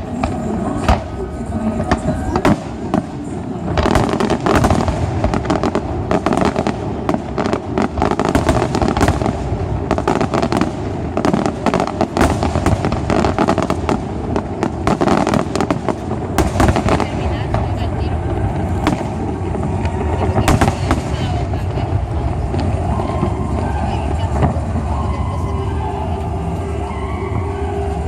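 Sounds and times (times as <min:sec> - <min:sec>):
fireworks bangs and crackles: 0:00.0 - 0:28.0.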